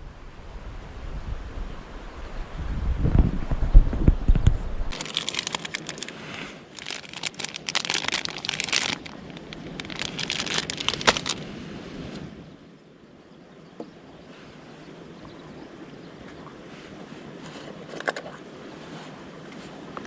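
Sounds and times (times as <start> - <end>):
crinkling sheet rustle: 4.9 - 11.4.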